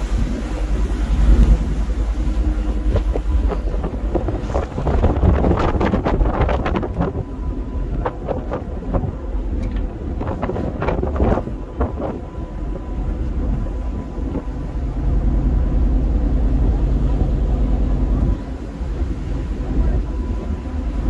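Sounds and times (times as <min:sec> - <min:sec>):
tugboat engine rumble: 0:00.0 - 0:21.0
wind buffeting microphone: 0:00.0 - 0:21.0
crackles and knocks: 0:02.8 - 0:12.2.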